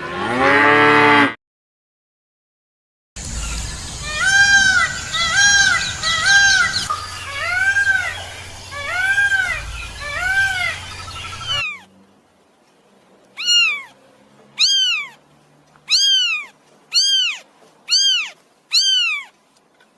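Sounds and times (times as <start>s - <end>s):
steady hum: 3.2s - 11.6s
cat meowing: 13.4s - 14.0s, 14.6s - 15.2s, 15.9s - 19.3s.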